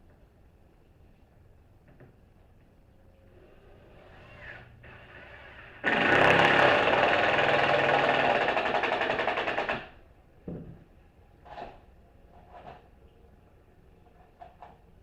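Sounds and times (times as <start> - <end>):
power tool rattling: 5.8 - 9.9.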